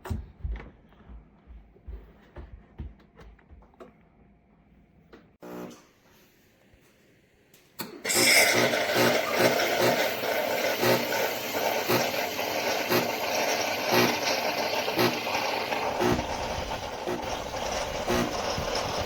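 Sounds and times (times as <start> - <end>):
espresso machine pump pulsing: 5.4 - 5.8, 8.0 - 19.0.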